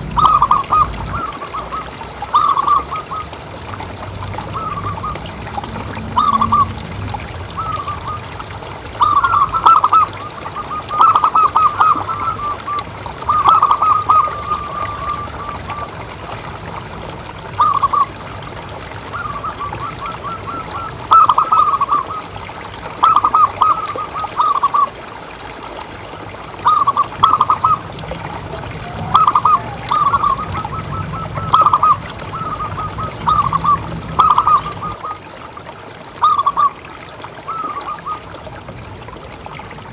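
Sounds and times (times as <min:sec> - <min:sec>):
doves cooing: 0:00.0 - 0:16.2, 0:19.1 - 0:22.4, 0:23.0 - 0:25.0, 0:26.6 - 0:35.3
trickling water: 0:00.0 - 0:39.9.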